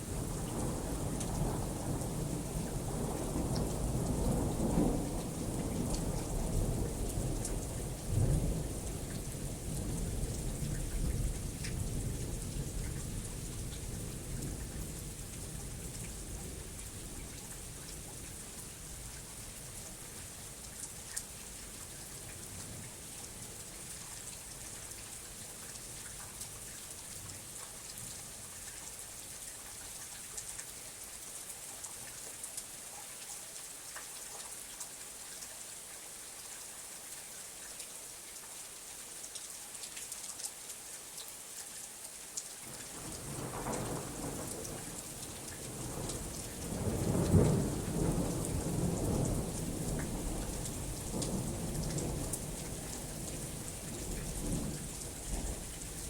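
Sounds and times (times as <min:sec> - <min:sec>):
steady rain hiss: 0:00.0 - 0:56.0
thunder rumble and crack: 0:45.7 - 0:56.0.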